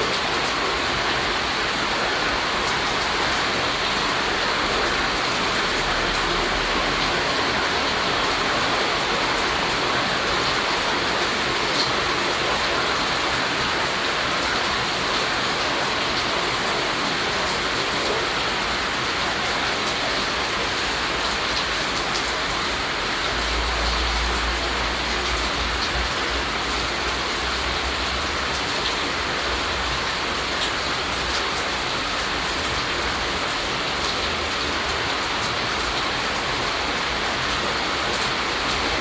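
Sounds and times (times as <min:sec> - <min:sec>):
steady rain falling: 0:00.0 - 0:39.0.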